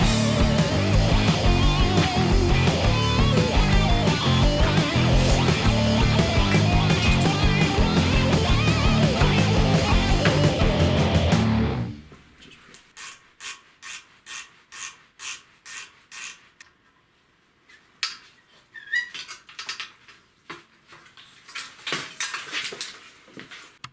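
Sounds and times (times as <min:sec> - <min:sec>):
ratchet wrench clicking: 0:12.8 - 0:16.6.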